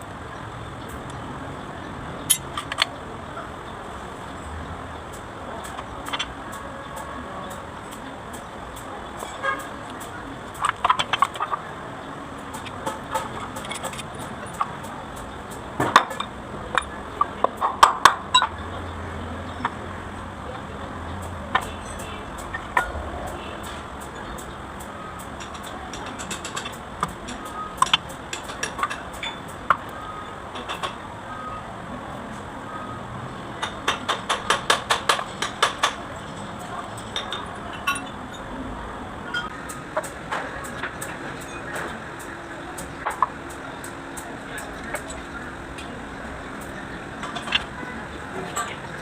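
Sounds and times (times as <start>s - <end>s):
metallic clinks: 2.3s - 2.9s.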